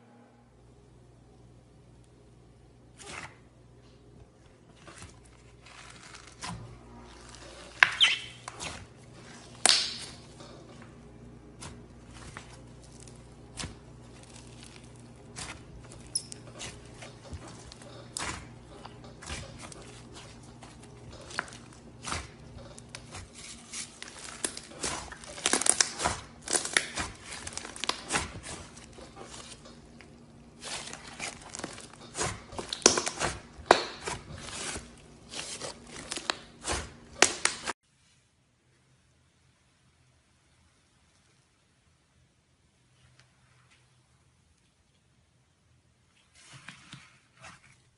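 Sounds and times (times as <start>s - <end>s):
slime squeezed by hand: 7.1s - 10.2s.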